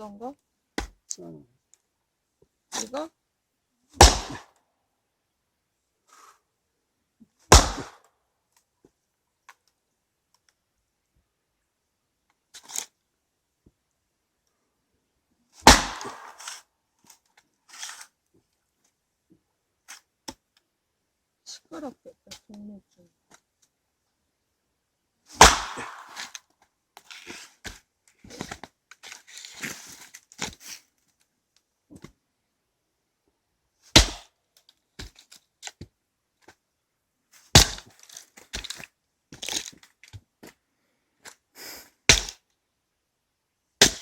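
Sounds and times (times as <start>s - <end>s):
axe splitting wood: 0.8s - 1.0s, 4.0s - 4.4s, 7.5s - 8.0s, 15.6s - 16.6s, 25.4s - 26.4s, 34.0s - 34.2s, 37.5s - 37.9s, 42.1s - 42.4s, 43.8s - 44.0s.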